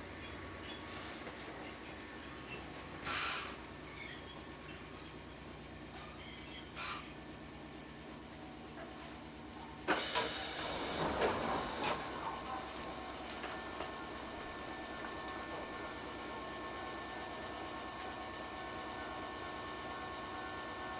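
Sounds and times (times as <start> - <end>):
high-pitched wheel squeal: 0.0 - 7.7
train wheel and rail noise: 0.0 - 20.9.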